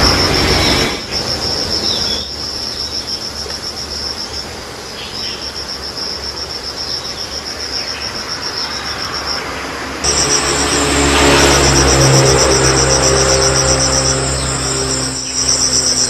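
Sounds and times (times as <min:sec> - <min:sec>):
cricket chirping: 0:00.0 - 0:16.0.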